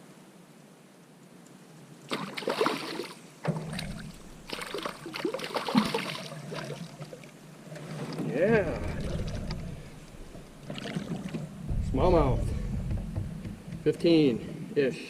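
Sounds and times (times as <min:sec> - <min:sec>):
water splashing: 0:02.1 - 0:14.7
knocking on canoe: 0:08.7 - 0:14.6.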